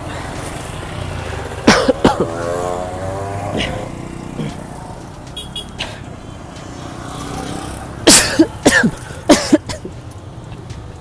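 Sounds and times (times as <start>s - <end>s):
street traffic: 0.0s - 11.0s
person sneezing: 3.6s - 4.7s.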